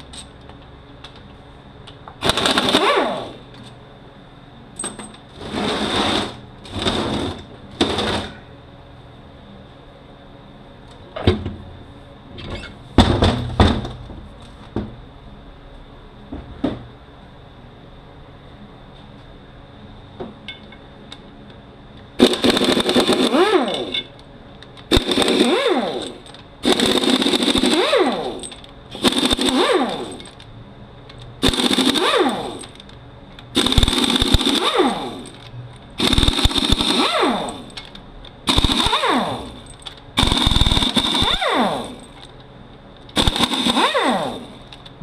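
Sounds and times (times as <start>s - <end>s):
impact wrench bursts: 2.2s - 3.4s, 22.2s - 24.1s, 24.9s - 30.4s, 31.4s - 32.8s, 33.5s - 37.8s, 38.5s - 42.3s, 43.1s - 44.7s.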